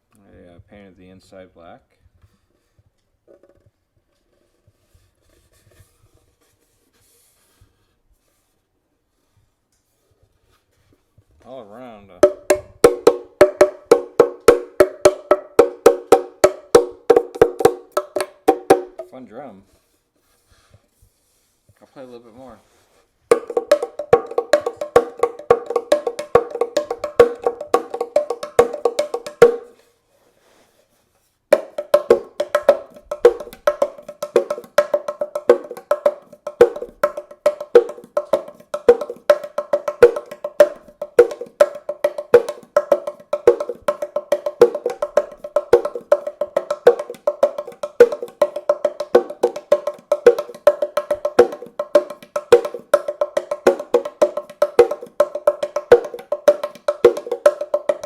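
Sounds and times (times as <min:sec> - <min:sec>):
cajon played by hand: 0:12.2 - 0:19.1, 0:23.3 - 0:29.8, 0:31.5 - 0:58.0.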